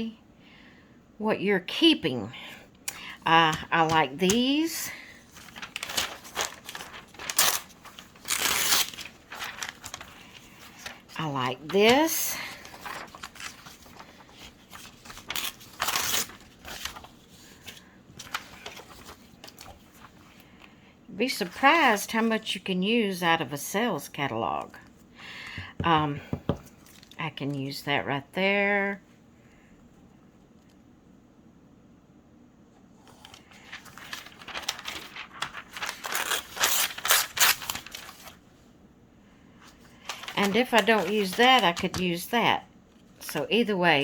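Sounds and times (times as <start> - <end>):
paper pages rustling: 3.0 - 20.7, 33.0 - 38.4, 39.6 - 42.4.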